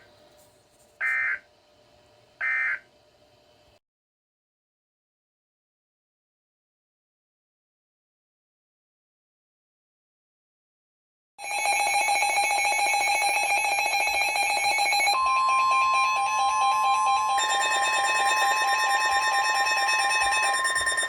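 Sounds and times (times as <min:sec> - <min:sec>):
electronic alarm beeping rapidly: 0:11.4 - 0:21.0
steady warning tone: 0:11.4 - 0:21.0
second steady tone: 0:15.1 - 0:21.0.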